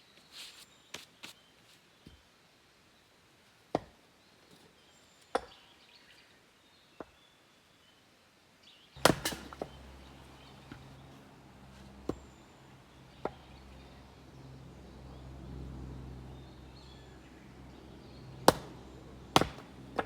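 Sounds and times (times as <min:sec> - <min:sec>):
wood being chopped: 0:05.3 - 0:05.6, 0:09.0 - 0:11.0, 0:11.8 - 0:12.4, 0:13.1 - 0:13.6, 0:18.4 - 0:20.0.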